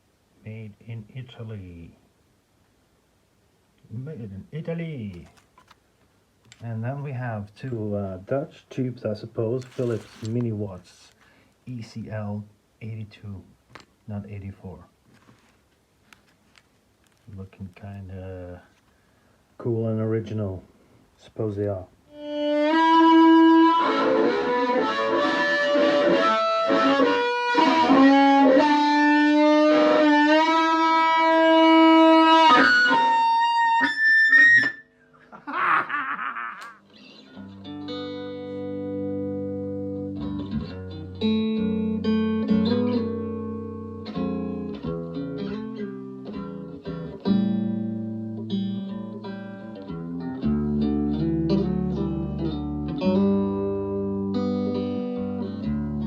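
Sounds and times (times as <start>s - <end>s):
electric guitar music: 22.1s - 34.8s, 36.8s - 56.0s.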